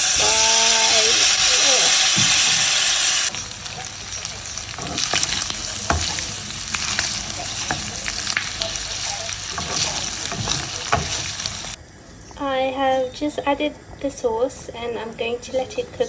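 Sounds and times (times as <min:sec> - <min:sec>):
food sizzling in a hot pan: 0:00.0 - 0:11.8
utensil clicking against pan: 0:03.3 - 0:11.8.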